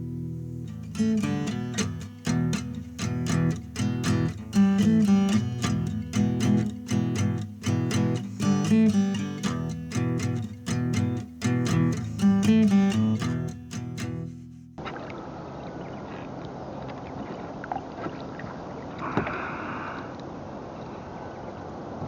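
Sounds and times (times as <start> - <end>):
acoustic guitar strumming chords: 0.0 - 14.8.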